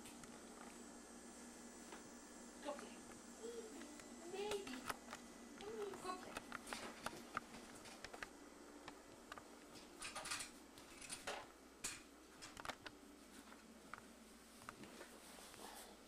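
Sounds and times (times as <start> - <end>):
soft rustles: 13.2 - 16.0.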